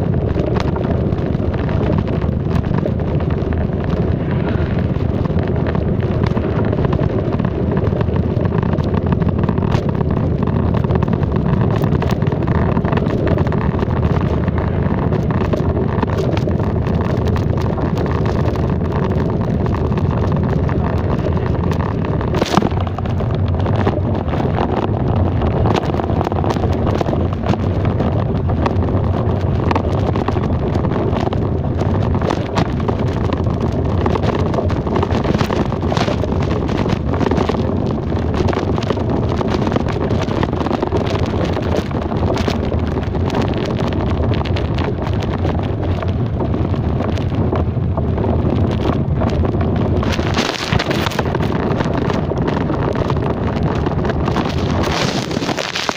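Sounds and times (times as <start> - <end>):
vehicle running noise: 0.0 - 55.9
wind rumble on microphone: 0.0 - 55.9.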